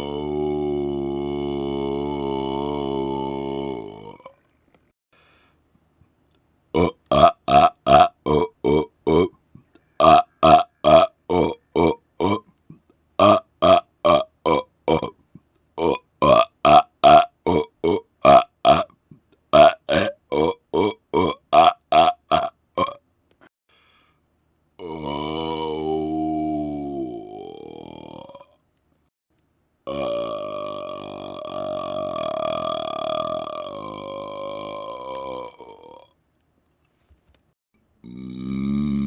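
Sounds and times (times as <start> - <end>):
man burping rapidly: 0.0 - 4.4, 6.8 - 9.4, 10.0 - 15.2, 15.8 - 23.0, 24.8 - 28.6, 29.9 - 36.2, 38.0 - 39.0.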